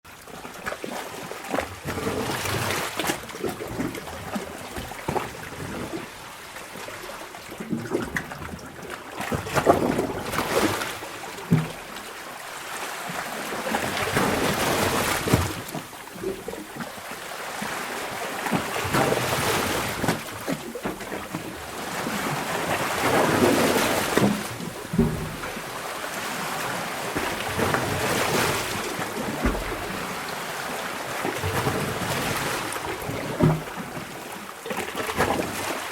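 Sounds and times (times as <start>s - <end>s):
sea water sloshing: 0.1s - 35.9s
water slapping against boat: 0.1s - 35.9s.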